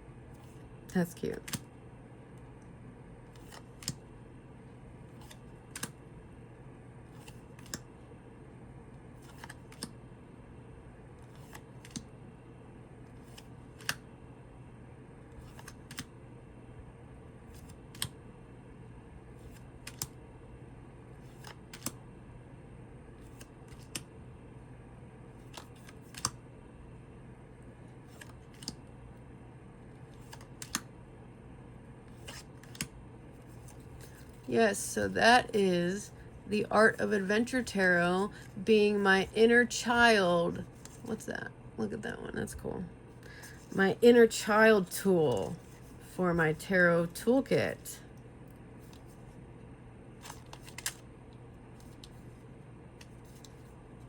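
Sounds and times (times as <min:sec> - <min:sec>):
low room hum: 0:00.0 - 0:54.0
cards flipping with crisp clicks: 0:01.4 - 0:01.6, 0:03.3 - 0:04.0, 0:05.2 - 0:06.0, 0:07.1 - 0:07.9, 0:09.2 - 0:10.0, 0:11.2 - 0:12.1, 0:13.1 - 0:14.0, 0:15.3 - 0:16.1, 0:17.5 - 0:18.2, 0:19.4 - 0:20.2, 0:21.2 - 0:22.0, 0:23.2 - 0:24.1, 0:25.4 - 0:26.4, 0:28.1 - 0:28.8, 0:30.1 - 0:30.9, 0:32.1 - 0:34.5, 0:48.8 - 0:49.3, 0:50.2 - 0:51.1, 0:51.8 - 0:52.4, 0:53.0 - 0:53.8.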